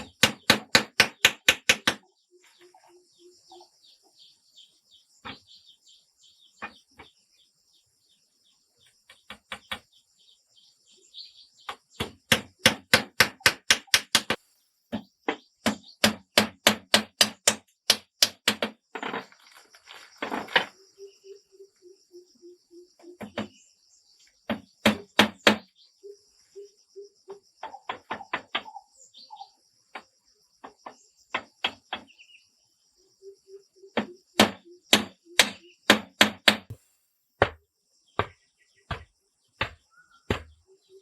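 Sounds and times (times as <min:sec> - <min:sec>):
tool striking wood: 0:00.0 - 0:02.1, 0:11.7 - 0:18.8, 0:24.5 - 0:25.7, 0:34.0 - 0:36.8, 0:37.4 - 0:37.6, 0:38.2 - 0:40.6.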